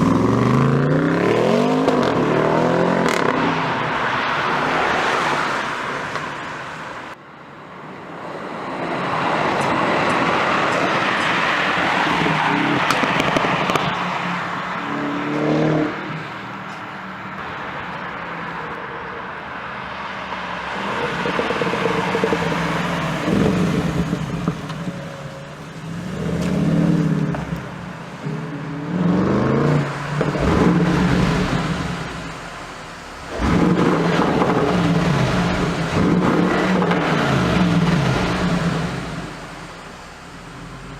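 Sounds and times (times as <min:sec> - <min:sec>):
street noise: 0:00.0 - 0:40.9
car engine accelerating: 0:20.3 - 0:40.9.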